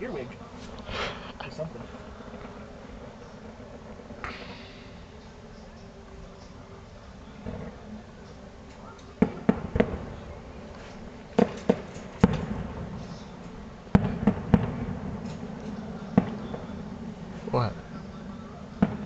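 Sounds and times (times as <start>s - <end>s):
fireworks bursting: 0.0s - 19.0s.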